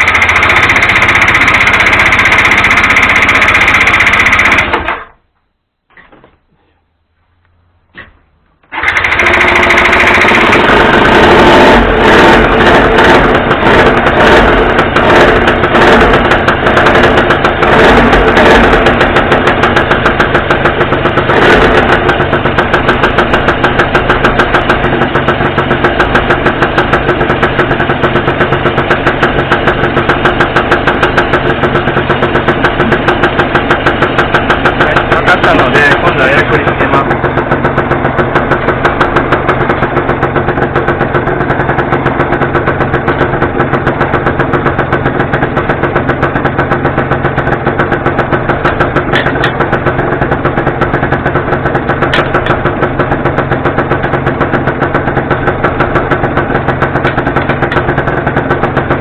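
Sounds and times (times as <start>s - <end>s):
scooter engine starting and idling: 0.0s - 5.2s, 7.9s - 59.0s.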